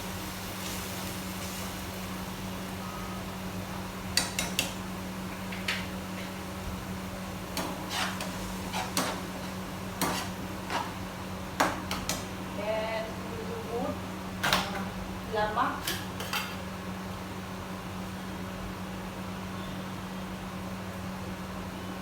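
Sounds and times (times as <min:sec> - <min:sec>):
metal utensils and pots clattering: 0:07.6 - 0:11.0, 0:15.8 - 0:16.7.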